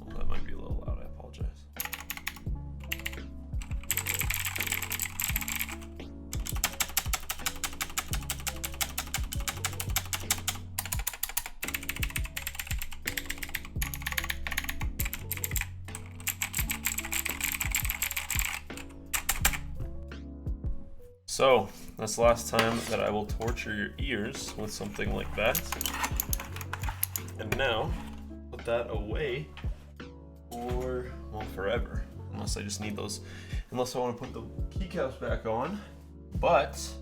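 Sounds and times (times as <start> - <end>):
fast mechanical keyboard typing: 1.8 - 19.6, 24.8 - 27.7.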